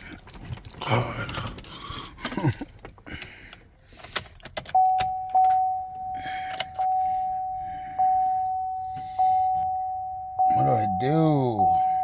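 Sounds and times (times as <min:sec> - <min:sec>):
keys jangling: 0:00.0 - 0:03.3
vehicle warning chime: 0:04.6 - 0:12.0.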